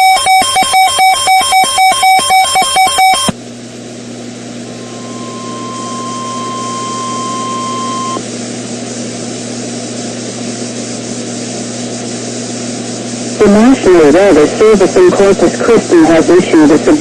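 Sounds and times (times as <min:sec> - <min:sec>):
warning alarm tone: 0:00.0 - 0:03.3, 0:04.8 - 0:08.2
low hum: 0:03.4 - 0:10.1
radio static hiss: 0:04.7 - 0:08.2, 0:13.4 - 0:17.0.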